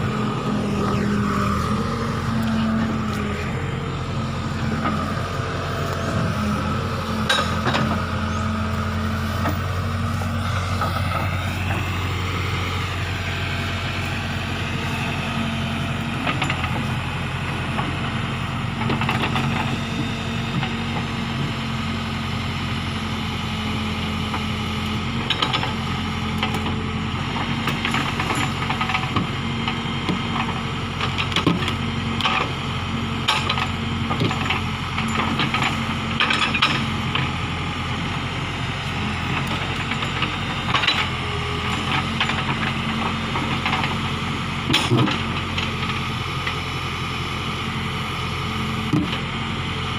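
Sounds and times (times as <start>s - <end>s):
hydraulic whine: 0.0s - 22.8s
diesel engine running: 0.0s - 49.9s
metal clanks and knocks: 7.2s - 8.1s, 16.2s - 16.9s, 33.2s - 37.3s, 44.7s - 45.9s.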